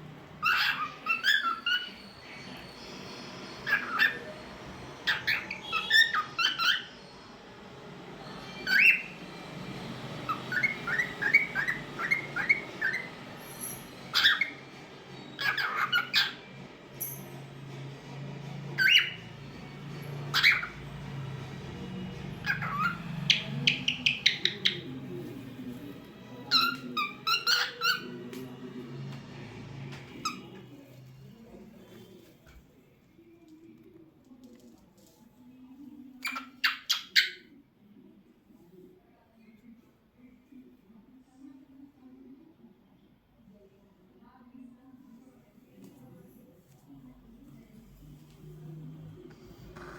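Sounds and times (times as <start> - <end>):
cockatiel chirping and whistling: 0.4 - 2.0, 3.6 - 4.3, 5.0 - 6.9, 8.6 - 9.2, 10.3 - 13.1, 14.1 - 14.6, 15.4 - 16.4, 18.8 - 19.2, 20.3 - 20.8, 22.4 - 24.8, 26.5 - 28.1.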